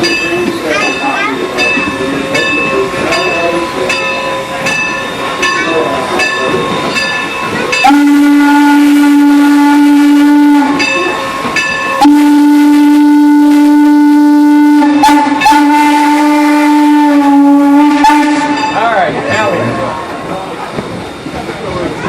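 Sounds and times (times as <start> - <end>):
bell ringing: 0.0 - 8.0
steam locomotive whistle: 7.8 - 11.3, 12.0 - 18.8.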